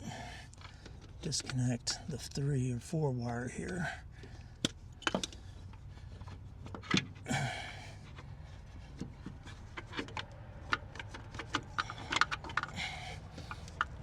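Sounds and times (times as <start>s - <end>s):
hands clicking on engine parts: 0.1s - 2.2s, 3.2s - 14.0s.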